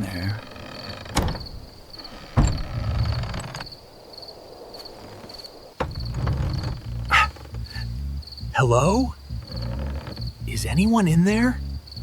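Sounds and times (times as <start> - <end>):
crickets chirping: 0.0 - 12.0
low suspense drone: 6.8 - 12.0.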